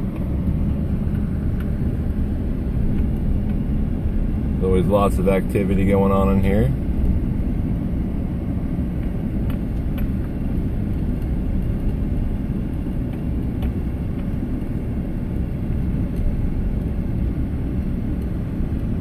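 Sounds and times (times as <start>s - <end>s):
car engine rumble: 0.0s - 19.0s.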